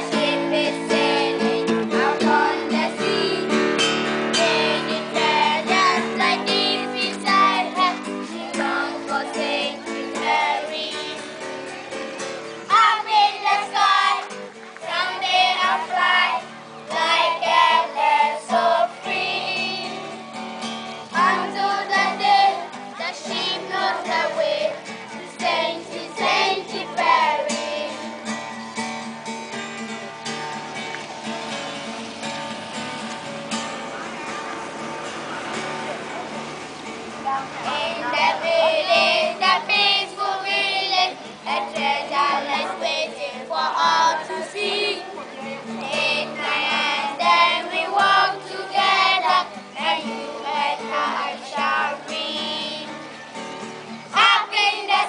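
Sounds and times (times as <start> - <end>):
children singing: 0.0 - 11.6, 12.7 - 20.2, 21.1 - 28.4, 37.5 - 53.0, 54.1 - 55.0.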